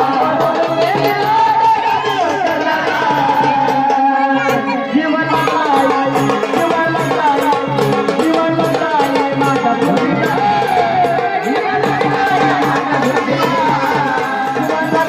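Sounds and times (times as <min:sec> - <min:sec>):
fast drum rhythm: 0:00.0 - 0:15.0.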